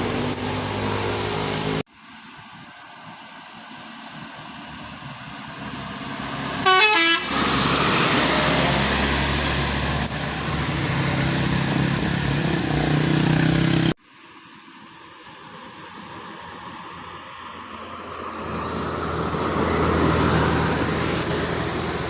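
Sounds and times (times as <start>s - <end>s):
bus passing: 0.0s - 1.9s, 2.5s - 14.0s, 15.4s - 22.0s
multi-tone bus horn: 6.6s - 8.1s.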